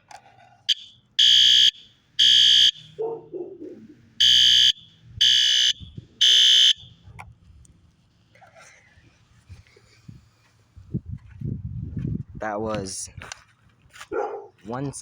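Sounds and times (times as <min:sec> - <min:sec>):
fire alarm horn blasts: 0:00.7 - 0:03.0, 0:04.2 - 0:07.0.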